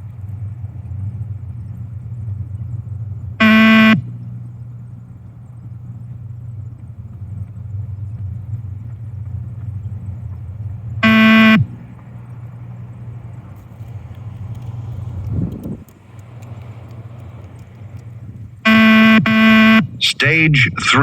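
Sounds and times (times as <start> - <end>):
low hum: 0.0 - 21.0
loud buzzy beep: 3.4 - 4.1, 11.0 - 11.8, 18.7 - 21.0.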